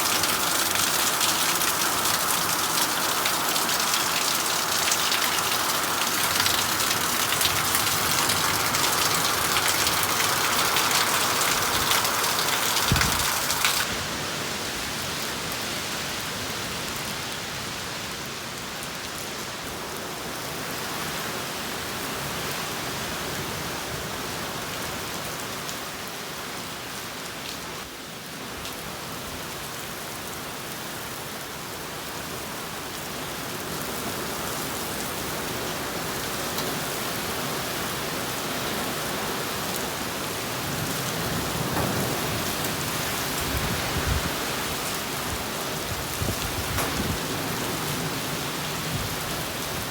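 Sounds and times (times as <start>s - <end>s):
heavy rain pouring: 0.0s - 17.6s, 32.0s - 49.9s.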